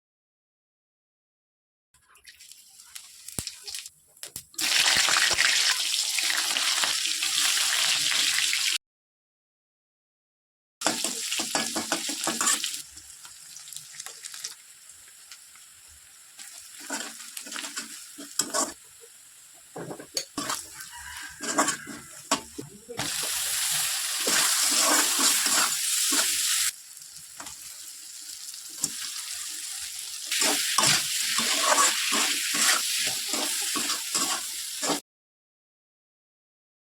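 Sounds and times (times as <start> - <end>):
clinks and scrapes of stirring: 19.9 - 22.7.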